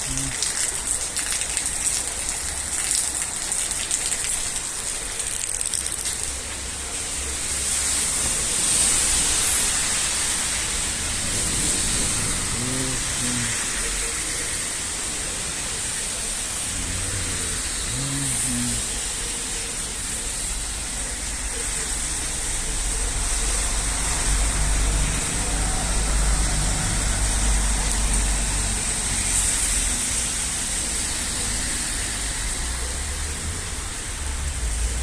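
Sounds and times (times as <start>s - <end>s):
crackly patter of drops: 0.0s - 6.7s
steady rain falling: 0.0s - 35.0s.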